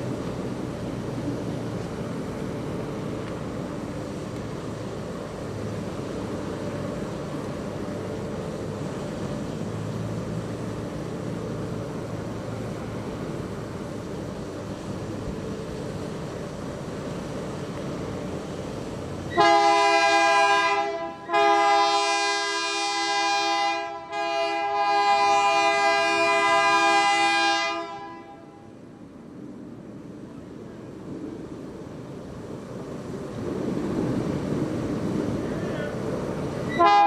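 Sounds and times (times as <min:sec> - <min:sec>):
locomotive air horn blasts: 0:19.3 - 0:28.7, 0:36.7 - 0:37.0.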